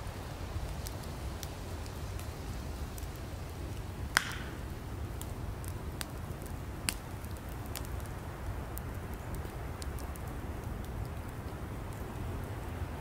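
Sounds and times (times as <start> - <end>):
campfire crackling and popping: 0.0 - 13.0.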